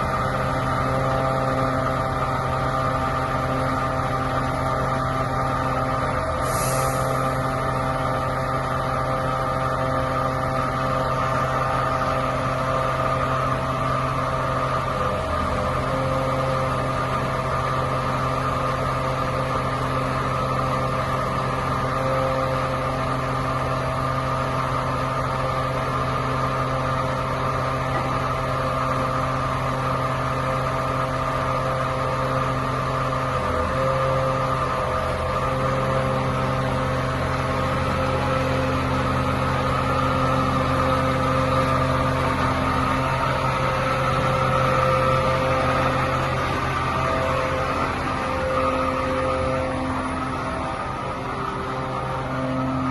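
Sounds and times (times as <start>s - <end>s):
diesel engine running: 0.0s - 52.9s
high whine: 43.4s - 52.9s.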